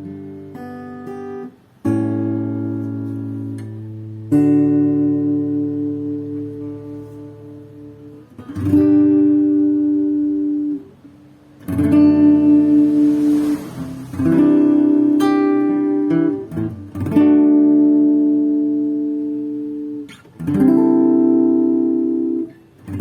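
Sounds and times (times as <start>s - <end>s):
acoustic guitar strumming chords: 0.0s - 23.0s.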